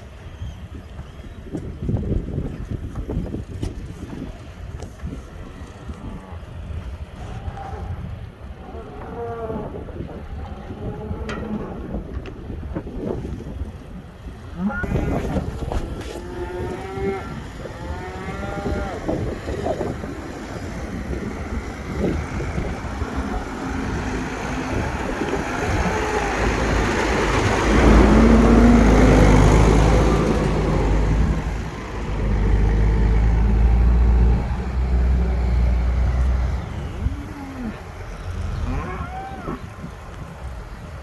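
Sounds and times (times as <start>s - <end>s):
low engine hum: 0.0s - 41.0s
cattle mooing: 8.6s - 11.9s, 16.0s - 19.4s, 33.0s - 39.7s.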